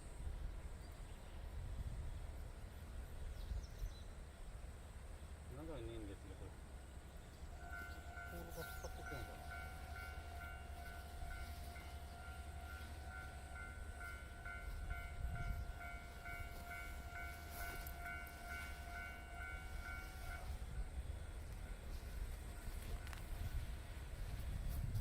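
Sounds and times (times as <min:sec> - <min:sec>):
level-crossing alarm ringing: 0:07.5 - 0:23.6.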